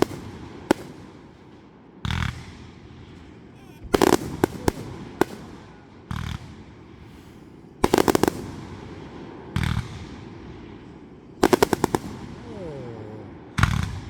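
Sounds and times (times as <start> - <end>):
firework cracks: 0.0 - 2.5, 3.6 - 10.1, 11.4 - 14.0
firework bangs: 0.0 - 14.0.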